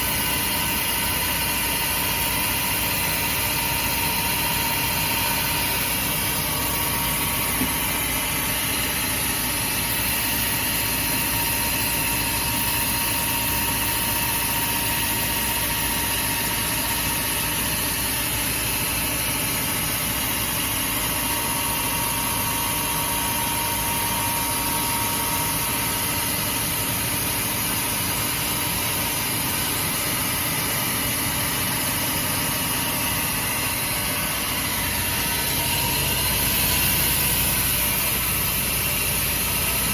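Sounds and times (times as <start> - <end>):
band saw running: 0.0 - 39.9.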